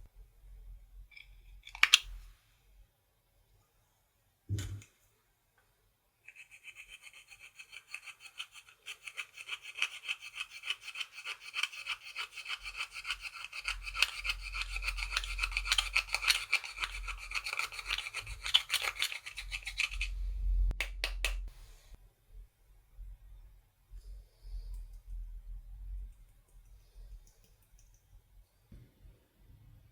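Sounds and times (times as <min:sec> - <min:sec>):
slime scraping and squishing: 0:08.2 - 0:20.2.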